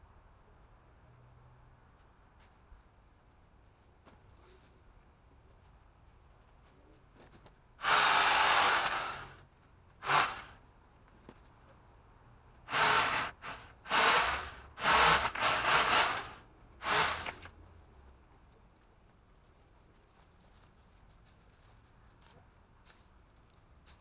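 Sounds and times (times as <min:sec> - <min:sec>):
pole saw whining: 0:07.8 - 0:09.4, 0:10.0 - 0:10.5, 0:12.7 - 0:17.5.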